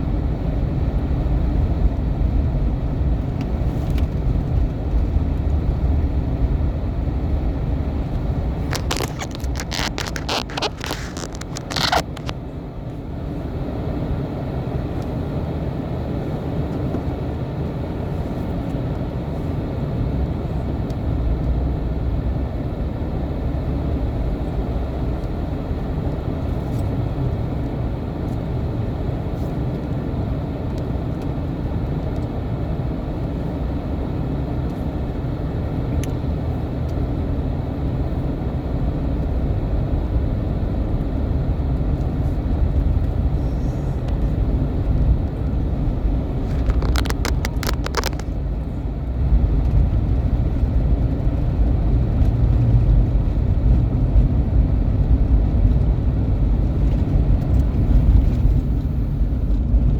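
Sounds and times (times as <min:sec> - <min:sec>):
vehicle engine running: 0:00.0 - 0:59.9.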